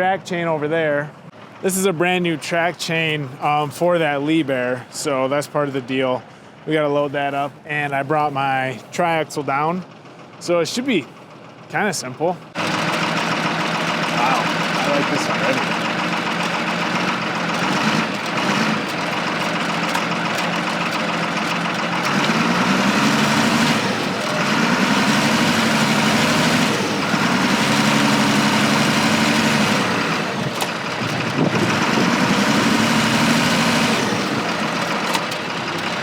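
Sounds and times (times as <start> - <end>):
diesel engine revving: 9.9 - 36.0.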